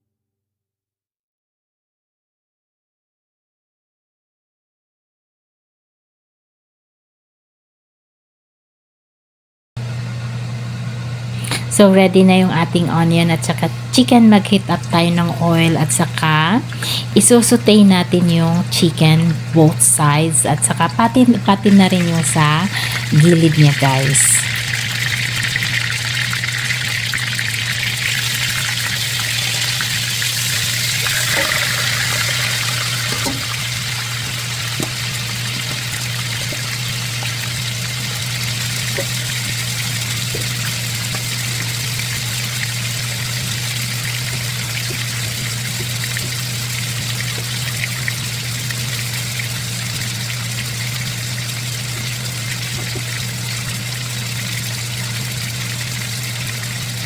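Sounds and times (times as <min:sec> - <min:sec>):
steady low hum: 0:09.8 - 0:57.0
chicken sizzling in hot oil: 0:13.5 - 0:57.0.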